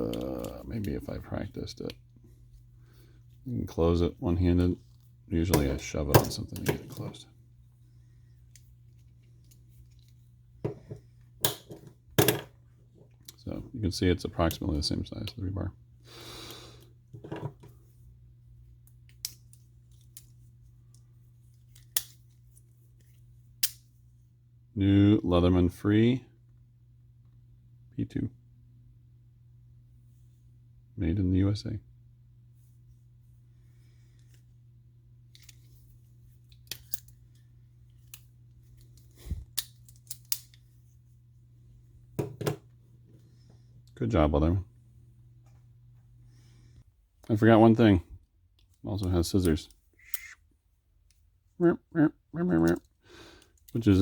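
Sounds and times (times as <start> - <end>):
steady low hum: 0.0 - 54.0.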